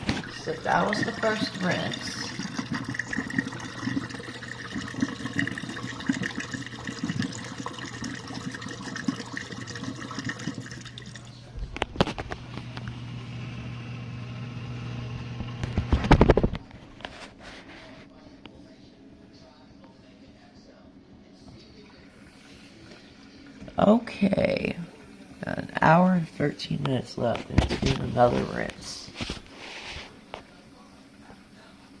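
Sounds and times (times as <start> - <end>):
water sloshing in dishwasher: 0.0 - 12.8
gurgling drain rush: 0.0 - 14.0, 21.7 - 25.8
pump motor hum: 0.0 - 16.7.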